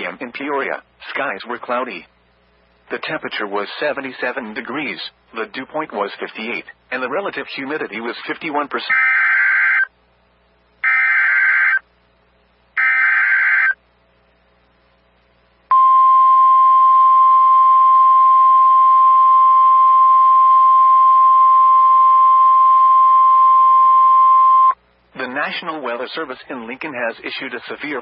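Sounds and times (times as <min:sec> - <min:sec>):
warning alarm tone: 0:10.8 - 0:11.8, 0:12.8 - 0:13.8
shrill digital data bursts: 0:12.8 - 0:13.8.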